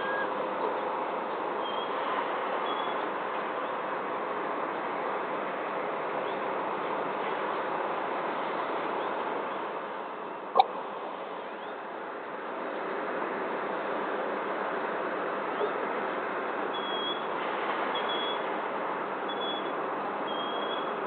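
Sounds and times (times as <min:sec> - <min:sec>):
distant traffic hum: 0:00.0 - 0:21.0
faint bird chirps: 0:20.3 - 0:20.9.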